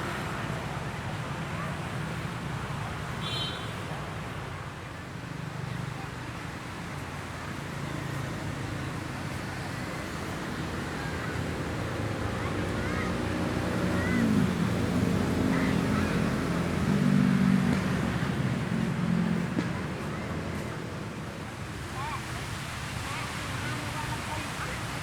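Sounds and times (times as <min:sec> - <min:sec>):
surf washing on shore: 0:00.0 - 0:25.0.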